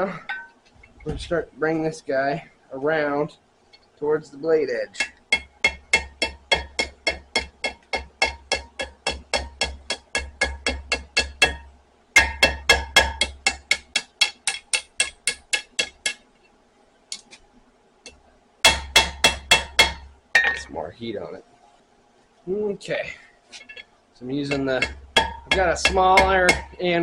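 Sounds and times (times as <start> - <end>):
hammer striking steel on anvil: 5.0 - 16.2, 18.6 - 20.7, 24.4 - 27.0.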